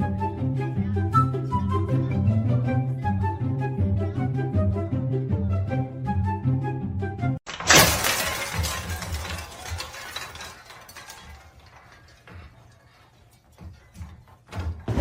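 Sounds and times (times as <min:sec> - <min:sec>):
background music: 0:00.0 - 0:07.4
loud crash of shattering: 0:07.5 - 0:12.6
clinking and clattering: 0:07.5 - 0:14.8.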